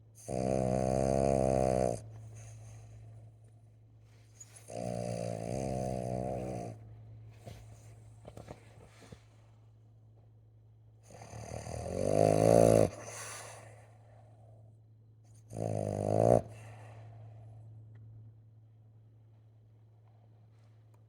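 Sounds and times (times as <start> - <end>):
faint steady hum: 0.0 - 21.0
dog snoring: 0.2 - 3.1, 4.4 - 6.8, 11.0 - 14.5, 15.3 - 17.1.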